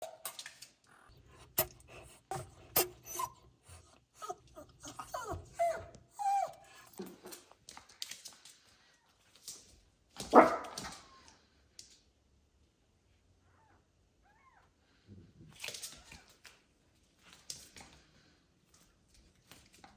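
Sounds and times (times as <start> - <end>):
puppy whimpering and yipping: 1.6 - 7.0.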